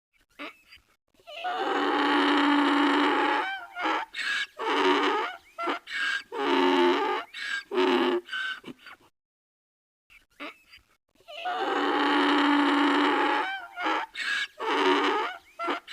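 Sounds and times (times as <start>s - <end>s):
donkey braying: 1.3s - 8.8s, 11.3s - 15.9s.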